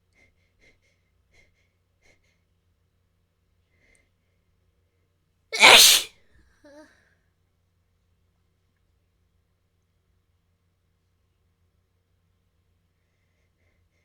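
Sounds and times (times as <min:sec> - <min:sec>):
faint voiced sound: 0:05.6 - 0:06.1
person sneezing: 0:05.6 - 0:06.1.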